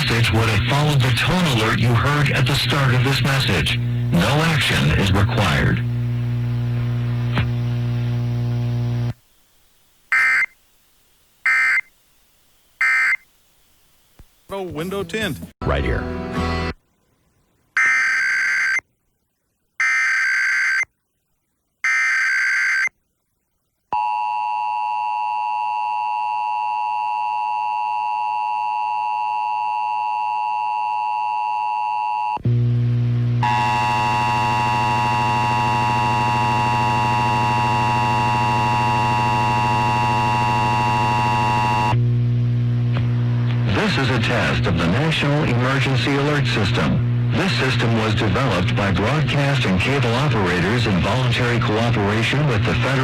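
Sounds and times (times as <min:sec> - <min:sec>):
low hum: 0:32.4 - 0:49.1.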